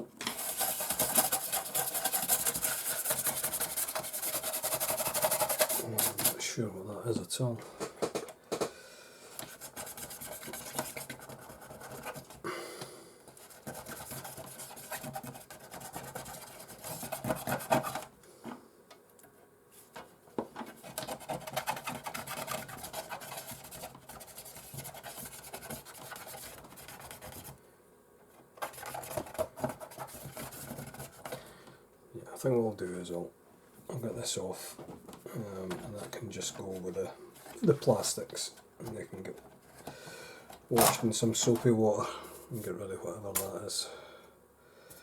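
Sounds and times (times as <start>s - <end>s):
scraping on plastic and metal parts: 0.2s - 6.4s, 13.3s - 18.6s, 19.8s - 27.6s, 28.4s - 31.4s, 34.7s - 41.8s.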